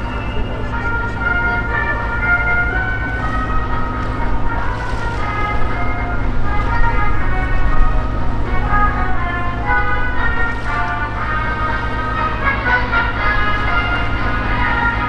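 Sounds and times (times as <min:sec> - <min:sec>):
melody of held notes: 0:00.0 - 0:15.0
steady low rumble: 0:00.0 - 0:15.0.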